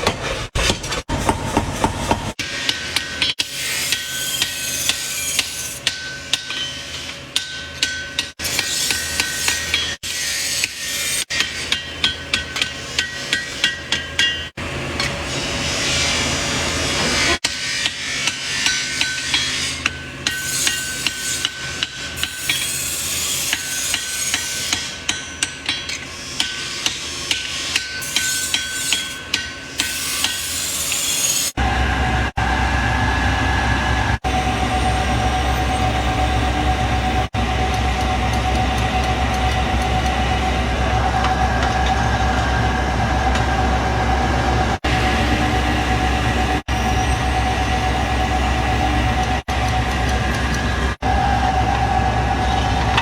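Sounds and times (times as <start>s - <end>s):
hammer striking metal on anvil: 1.2s - 10.0s, 10.6s - 15.1s, 17.4s - 31.4s
steady whine: 31.6s - 53.0s.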